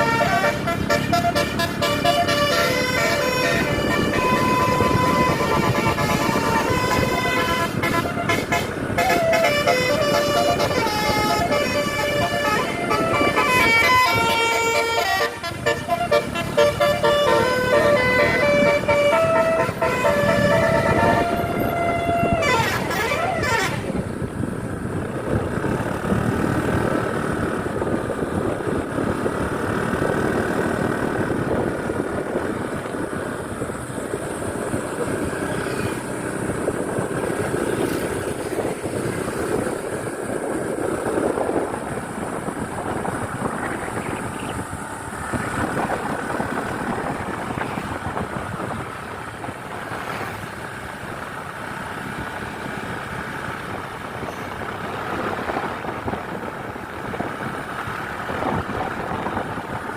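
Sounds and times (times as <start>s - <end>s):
bus musical horn tune: 0.0s - 24.1s
sliding horn tone: 0.0s - 24.1s
bus engine running: 0.0s - 59.9s
road noise: 0.0s - 59.9s.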